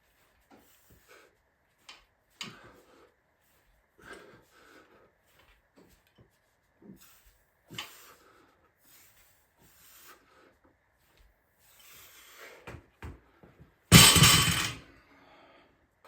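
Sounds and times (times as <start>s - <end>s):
barbell crashing on floor: 13.9s - 14.8s
metallic rattle: 13.9s - 14.8s.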